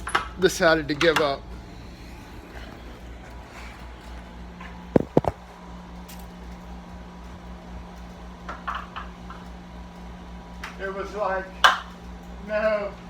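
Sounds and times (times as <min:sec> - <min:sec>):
air-conditioning unit humming: 0:00.0 - 0:13.0
sharp knocks: 0:04.9 - 0:05.4.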